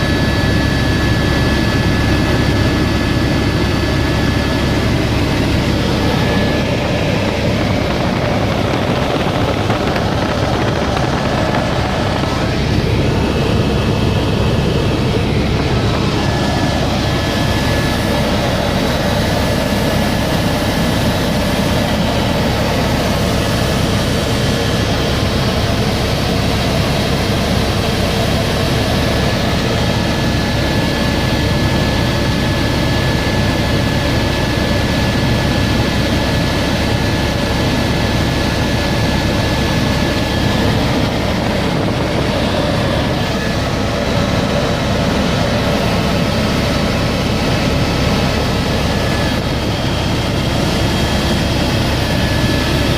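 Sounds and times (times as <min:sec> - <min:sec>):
helicopter rotor and engine drone: 0:00.0 - 0:52.9
thin steady whine: 0:00.1 - 0:30.6.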